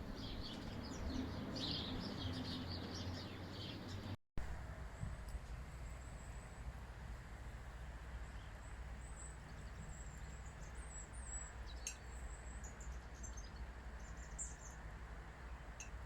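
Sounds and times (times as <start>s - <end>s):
small birds chirping: 0.0s - 4.2s, 8.3s - 14.8s.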